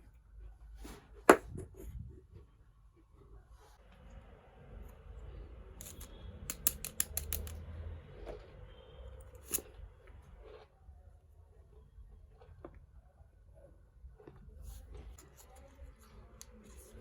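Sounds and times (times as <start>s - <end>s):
sharp plastic clicks: 5.8s - 7.6s.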